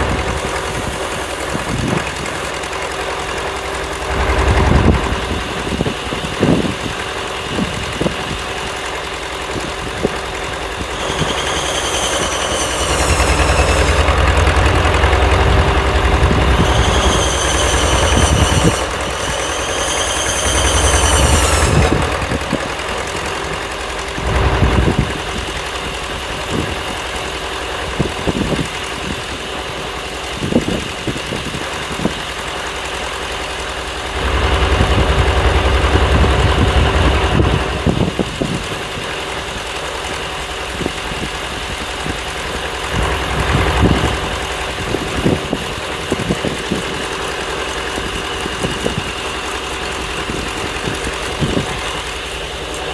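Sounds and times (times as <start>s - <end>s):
wavering high whine: 0.0s - 6.5s, 8.8s - 26.9s
engine idling: 0.0s - 28.0s.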